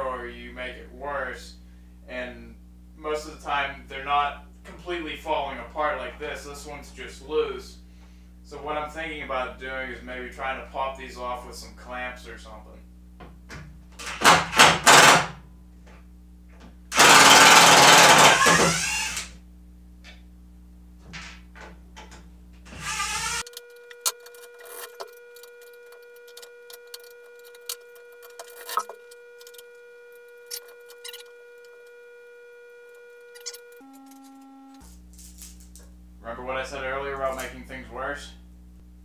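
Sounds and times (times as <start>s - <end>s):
power tool bursts: 14.0s - 15.4s, 16.9s - 19.4s, 22.7s - 25.1s.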